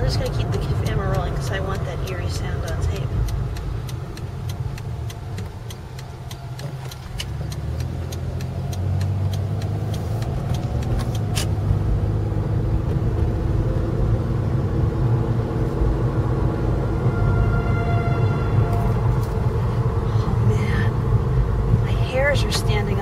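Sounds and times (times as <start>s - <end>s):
regular ticking: 0.0s - 12.1s
low rumble of wind: 0.0s - 23.0s
distant warning siren: 16.6s - 19.2s.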